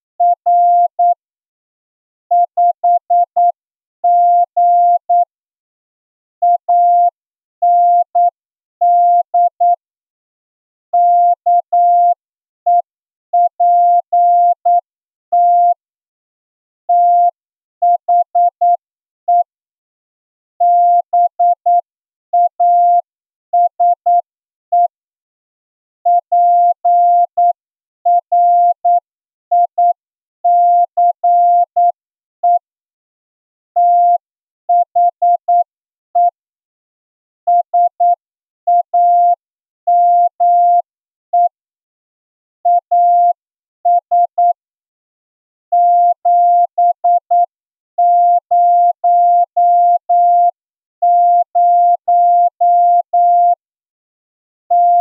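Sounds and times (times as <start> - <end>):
morse code tone: 54.7 - 55.0.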